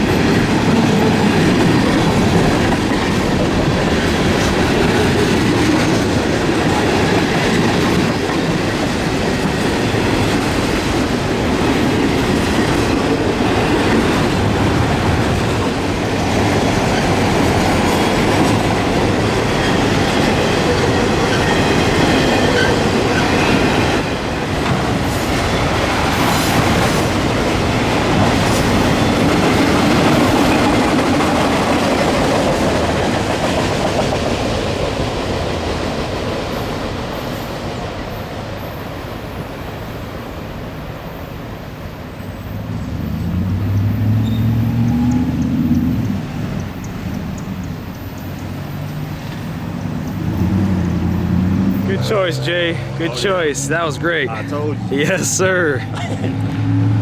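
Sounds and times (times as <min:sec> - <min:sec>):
clickety-clack over rail joints: 0:00.0 - 0:39.4, 0:42.4 - 0:57.0
steel wheels rumbling on rail: 0:00.0 - 0:57.0
faint wheel squeal: 0:43.7 - 0:45.3.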